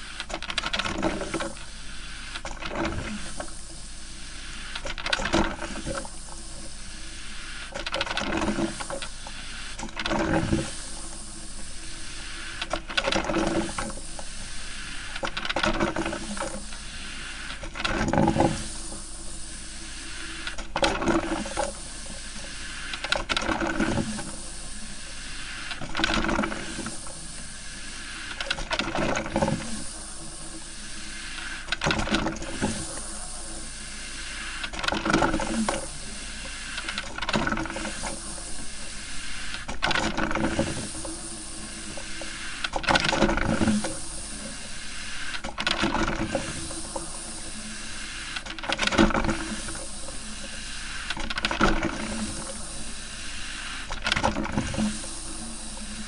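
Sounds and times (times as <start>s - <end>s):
coffee maker gurgling: 0.0s - 56.0s
coffee maker hissing: 0.0s - 56.0s.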